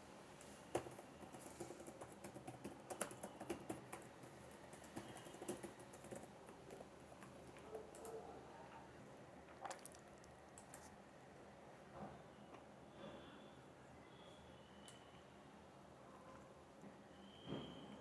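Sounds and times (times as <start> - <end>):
faint clicks and taps: 0.4 - 8.2.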